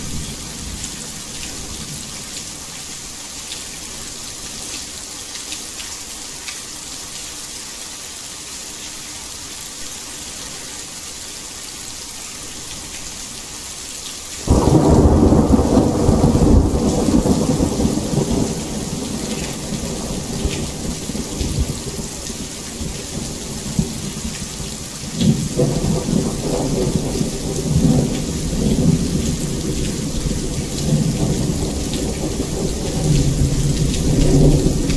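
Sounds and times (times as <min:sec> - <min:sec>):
heavy rain: 0:00.0 - 0:34.9
thunder rumbling: 0:14.5 - 0:34.9.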